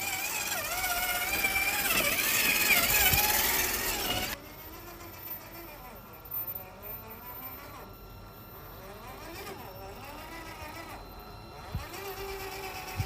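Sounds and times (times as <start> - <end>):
electric motor and gears whining: 0.0 - 13.0.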